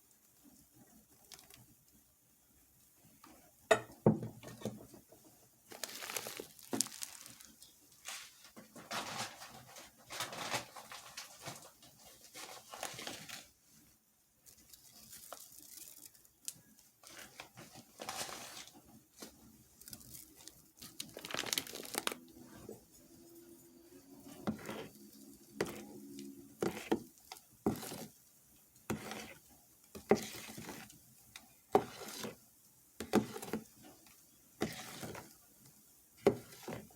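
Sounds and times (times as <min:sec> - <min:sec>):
food packaging crinkling: 0:05.7 - 0:13.6, 0:14.4 - 0:22.4.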